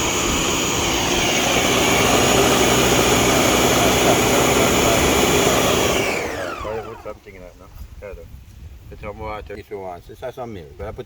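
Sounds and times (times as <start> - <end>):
electric blender whining: 0.0 - 7.2.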